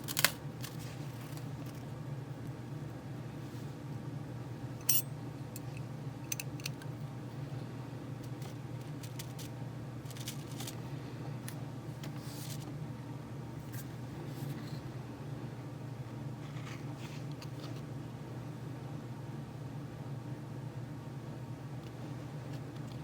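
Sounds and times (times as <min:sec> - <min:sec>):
steady low hum: 0:00.0 - 0:23.0
tools clicking and tapping: 0:04.8 - 0:06.8.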